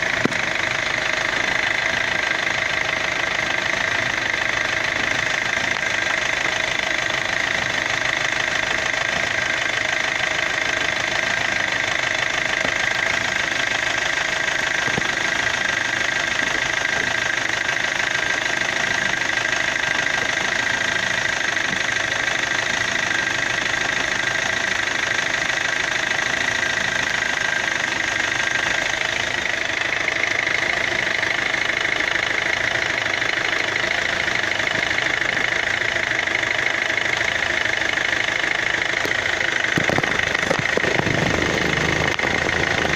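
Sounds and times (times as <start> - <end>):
car engine idling: 0.0 - 42.9
high whine: 38.8 - 42.9.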